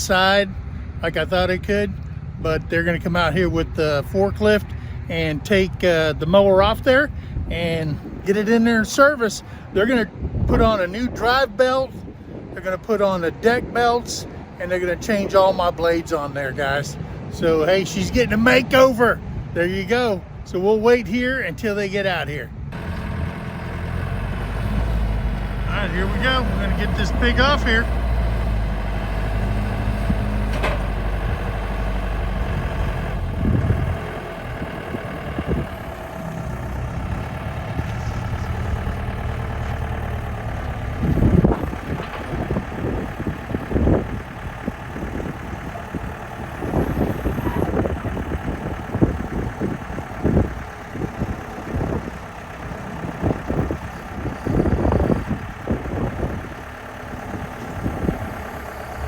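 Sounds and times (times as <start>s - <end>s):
forklift engine running: 22.5s - 59.0s.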